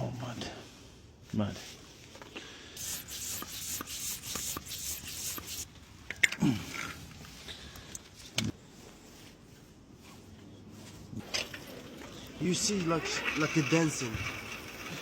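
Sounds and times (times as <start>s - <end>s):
quick rubbing strokes: 2.8s - 5.7s.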